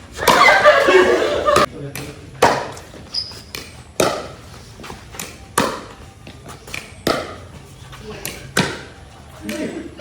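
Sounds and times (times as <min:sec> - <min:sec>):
paddles hitting plastic ball: 0:03.5 - 0:04.4, 0:05.2 - 0:07.5, 0:08.2 - 0:09.7.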